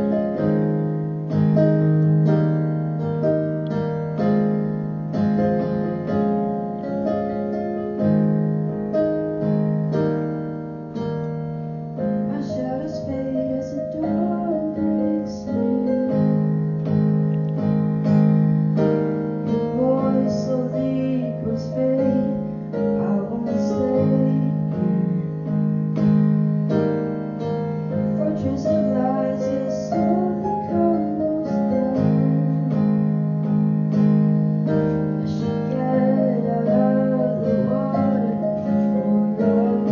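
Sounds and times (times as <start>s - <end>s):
piano chords: 0.0s - 39.9s
person singing: 12.3s - 16.3s, 19.7s - 25.4s, 28.1s - 32.9s, 35.2s - 39.9s.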